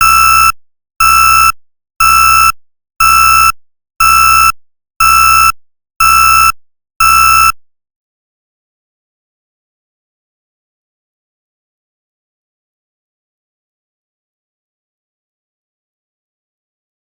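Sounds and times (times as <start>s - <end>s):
buzzy electronic alert beeps: 0.0s - 7.5s.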